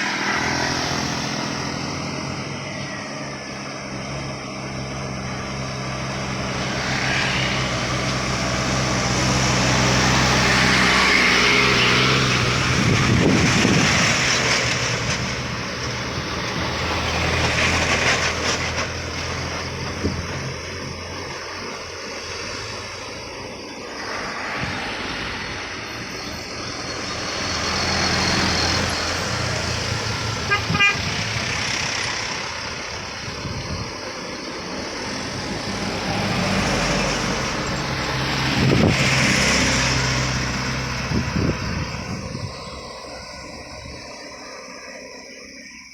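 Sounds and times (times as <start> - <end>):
trucks and cars passing: 0.0 - 45.9
car horn toot: 30.4 - 31.2.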